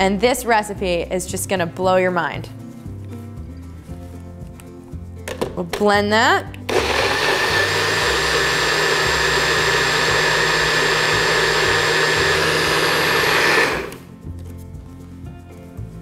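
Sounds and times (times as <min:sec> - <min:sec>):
blender motor whining: 0:06.7 - 0:14.1.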